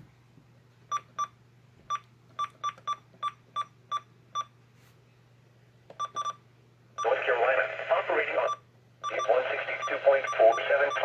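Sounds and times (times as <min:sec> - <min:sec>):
faint steady hum: 0:00.0 - 0:11.0
short electronic beeps: 0:08.5 - 0:11.0.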